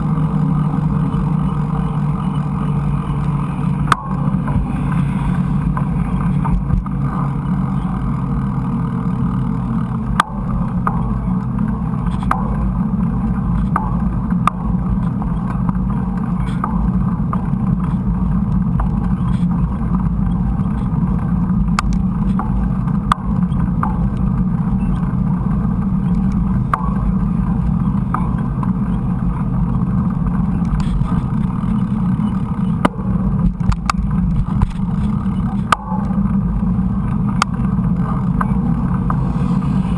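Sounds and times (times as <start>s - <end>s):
bike clicks and knocks: 10.0s - 39.6s.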